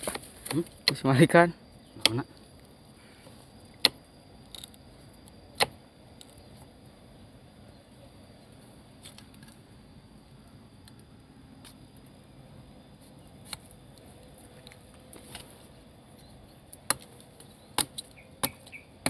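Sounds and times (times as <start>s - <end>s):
blade chipping into tree trunk: 3.8s - 4.8s, 5.5s - 6.4s, 16.7s - 18.8s.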